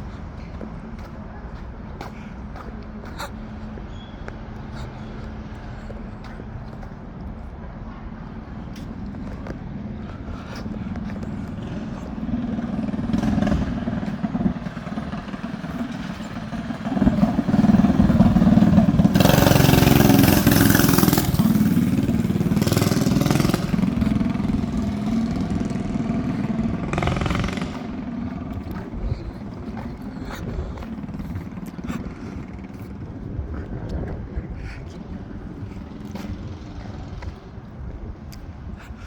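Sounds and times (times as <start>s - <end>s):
vehicle engine passing by: 8.2s - 33.6s.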